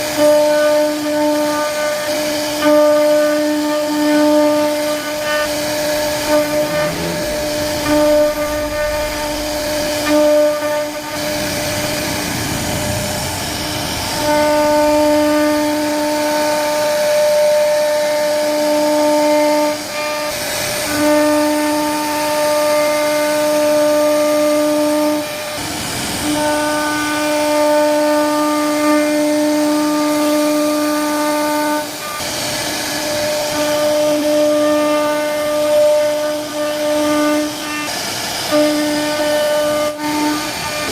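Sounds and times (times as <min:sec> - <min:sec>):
router high whine: 0:00.0 - 0:40.9
rough rushing noise: 0:04.6 - 0:17.6.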